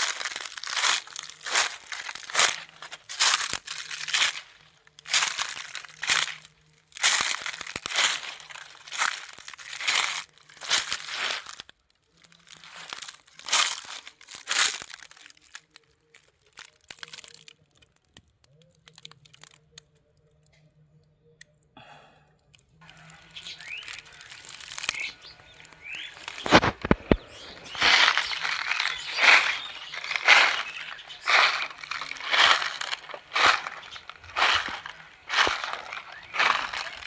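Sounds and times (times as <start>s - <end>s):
footsteps crunching on dry leaves: 0.0s - 15.8s, 16.5s - 17.5s, 22.8s - 37.0s
bird chirping: 22.9s - 37.0s.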